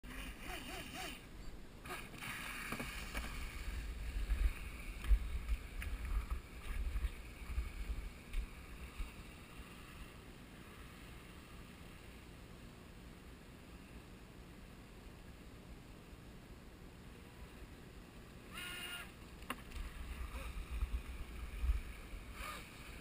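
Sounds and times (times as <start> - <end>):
wind rumbling on microphone: 2.8 - 10.2, 19.7 - 23.0
electric motor whine: 18.5 - 19.2, 19.8 - 23.0.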